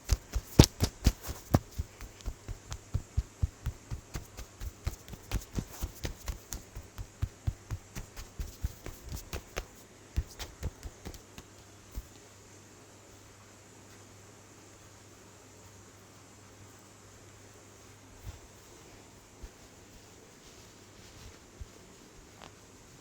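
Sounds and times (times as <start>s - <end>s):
percussive massage tapping: 0.0s - 12.1s.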